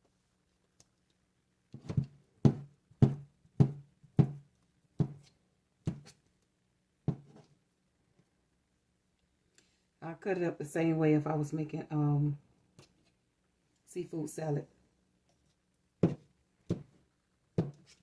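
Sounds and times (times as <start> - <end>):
knife chopping on cutting board: 1.8 - 4.4, 17.6 - 18.0.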